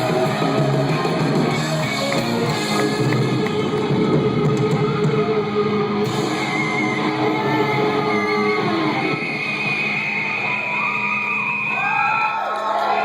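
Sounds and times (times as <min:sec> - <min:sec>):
live rock band playing: 0:00.0 - 0:09.2
electric guitar: 0:00.0 - 0:09.7.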